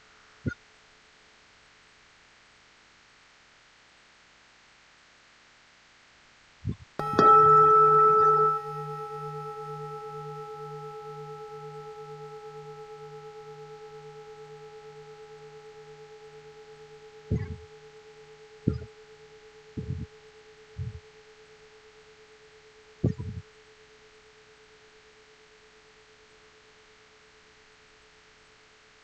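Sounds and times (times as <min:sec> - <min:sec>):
temple bell ringing: 0:07.0 - 0:22.7.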